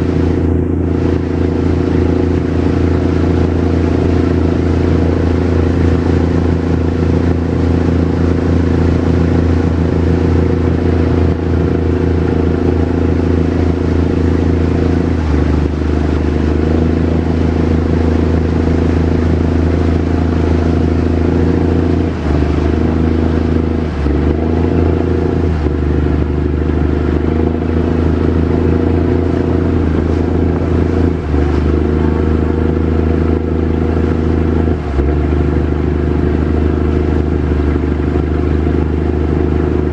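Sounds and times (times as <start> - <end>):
speedboat engine running: 0.0 - 39.9.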